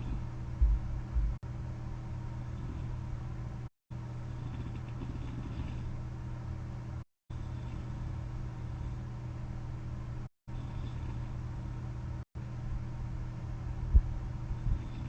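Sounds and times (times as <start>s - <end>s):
machine blower humming: 0.0s - 1.4s.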